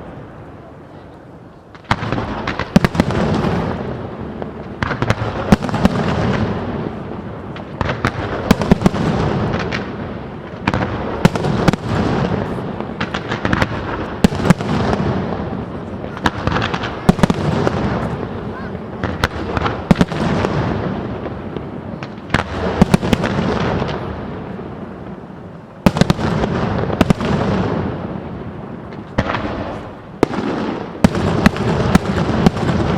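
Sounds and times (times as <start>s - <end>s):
fireworks bangs: 0.0s - 32.9s.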